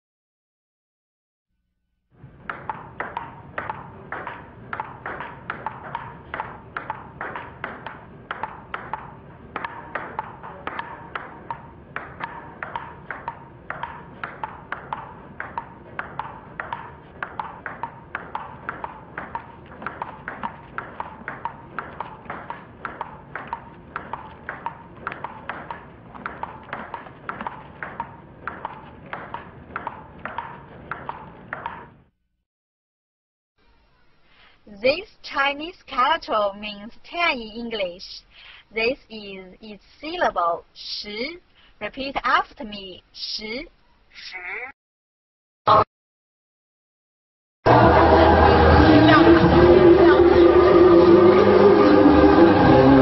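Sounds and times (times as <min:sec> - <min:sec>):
ping-pong ball hitting paddles: 0:02.3 - 0:32.0.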